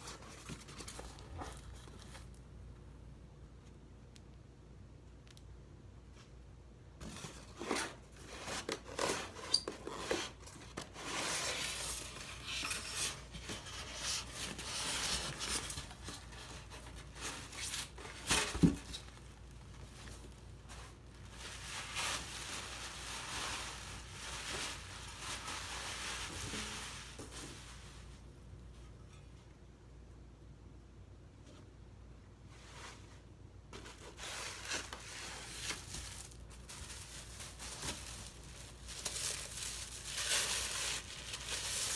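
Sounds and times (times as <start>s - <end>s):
packaging rustling and scraping: 0.0s - 2.4s, 7.0s - 28.2s, 32.6s - 41.9s.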